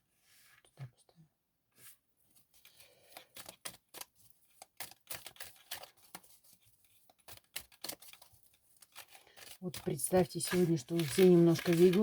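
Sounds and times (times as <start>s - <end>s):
cards being shuffled: 2.5s - 12.0s.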